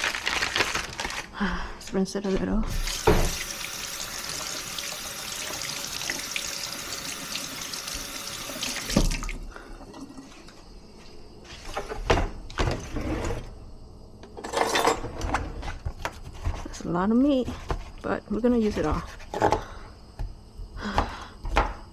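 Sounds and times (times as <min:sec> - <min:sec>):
tap water running into sink: 0:02.7 - 0:10.4.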